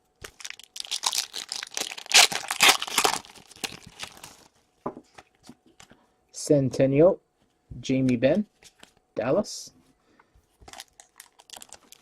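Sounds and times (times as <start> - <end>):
wrapper crinkling: 0.2 - 4.6, 10.6 - 12.0.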